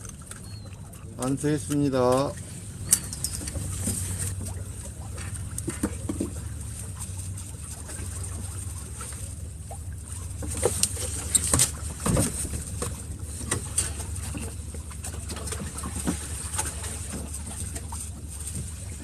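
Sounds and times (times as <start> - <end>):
boat engine humming: 0.0 - 19.0
knocks and clatter on board: 2.9 - 6.6, 10.4 - 19.0.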